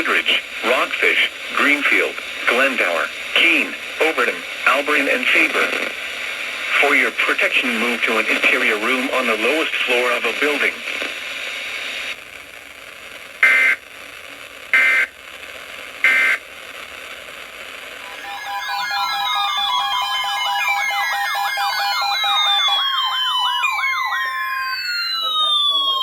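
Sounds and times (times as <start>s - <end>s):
radio hiss: 0.0s - 26.0s
electronic wailing siren tones: 18.0s - 26.0s
emergency alert data tones: 18.0s - 26.0s.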